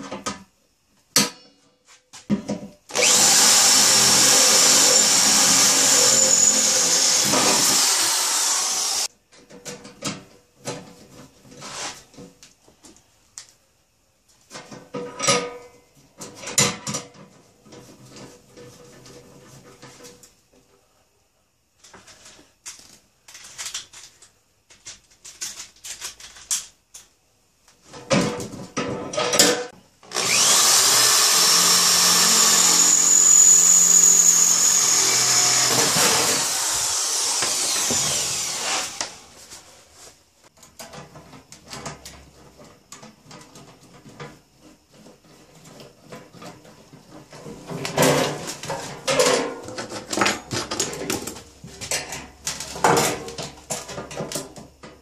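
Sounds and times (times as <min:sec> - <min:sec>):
electric power tool working metal: 0:02.9 - 0:09.1, 0:30.1 - 0:39.3
metal parts clicking and clattering: 0:21.8 - 0:27.1.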